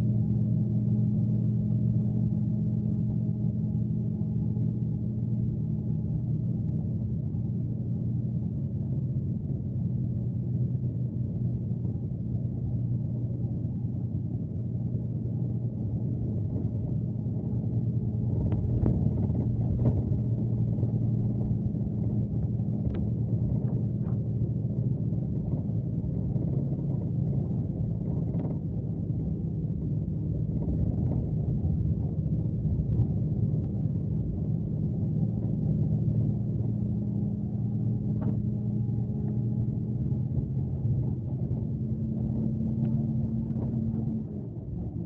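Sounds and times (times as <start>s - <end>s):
bus engine droning: 28.8s - 45.0s.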